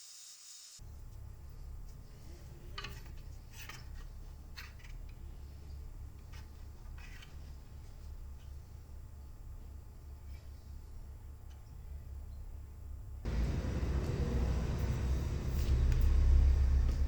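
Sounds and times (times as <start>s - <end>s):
steady low rumble: 13.2s - 17.0s.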